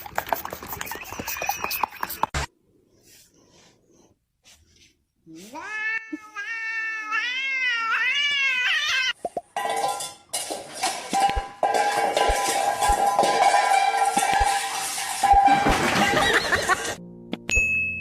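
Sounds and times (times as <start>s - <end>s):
cat yowling meow: 5.6s - 9.2s.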